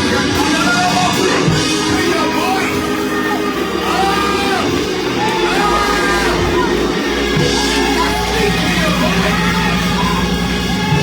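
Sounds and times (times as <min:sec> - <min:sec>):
sustained worship music chords: 0:00.0 - 0:11.0
voices singing and calling out: 0:00.0 - 0:11.0.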